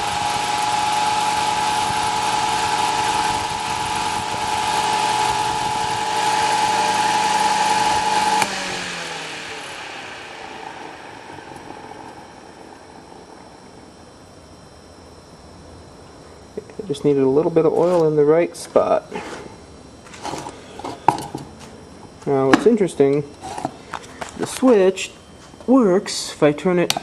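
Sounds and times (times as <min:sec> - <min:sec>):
rush of air from fan blades: 0:00.0 - 0:14.2
fan motor whine: 0:00.0 - 0:27.0.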